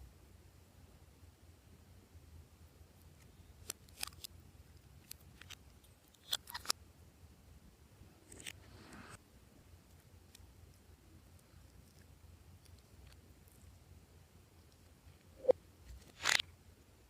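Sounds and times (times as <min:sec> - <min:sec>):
soft crackle: 0:09.8 - 0:16.4.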